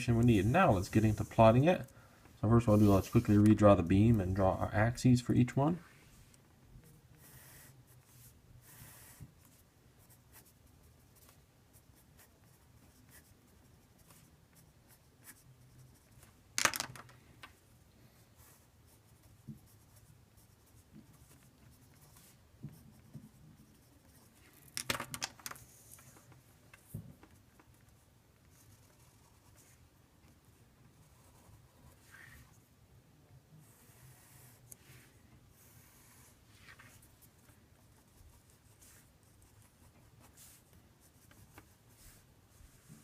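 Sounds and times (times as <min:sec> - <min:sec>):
pen scraping strokes: 0:00.1 - 0:01.7, 0:02.6 - 0:03.7, 0:07.2 - 0:16.4, 0:33.6 - 0:43.0.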